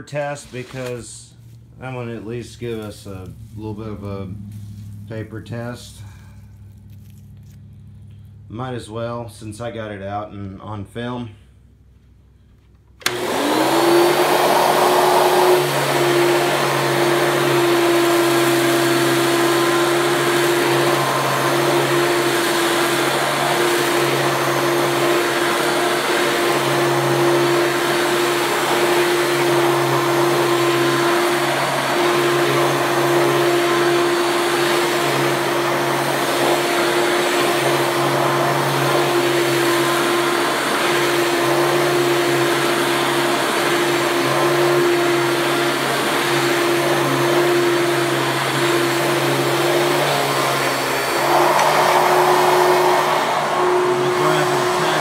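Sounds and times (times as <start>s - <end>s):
vacuum cleaner motor whine: 13.0s - 55.0s.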